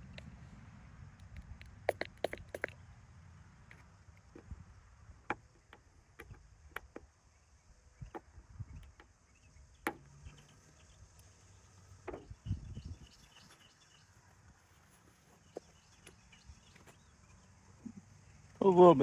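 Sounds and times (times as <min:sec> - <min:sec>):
faint insects chirping: 0:00.0 - 0:19.0
hand tool clicks: 0:01.2 - 0:02.8.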